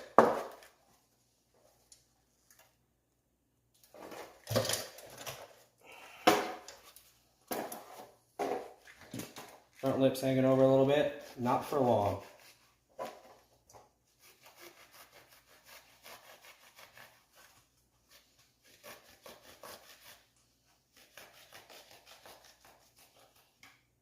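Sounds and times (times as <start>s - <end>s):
knife sawing through foam: 11.0s - 12.8s, 14.1s - 23.6s.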